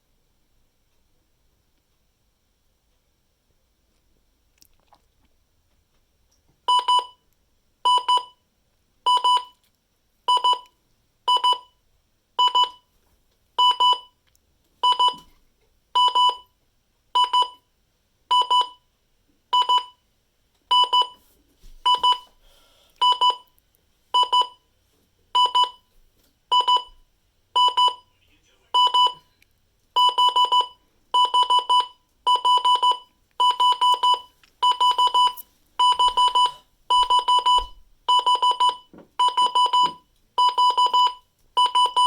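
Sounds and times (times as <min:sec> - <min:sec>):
weather radio alarm beeps: 0:27.6 - 0:29.3.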